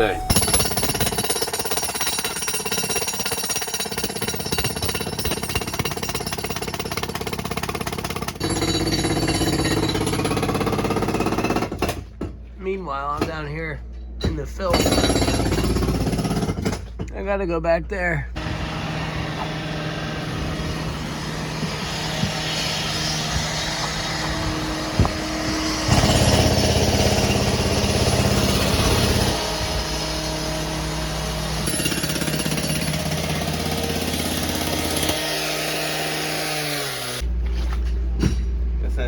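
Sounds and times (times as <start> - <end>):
demolition hammer pounding: 0.0 - 13.6, 14.2 - 17.3, 24.3 - 37.2.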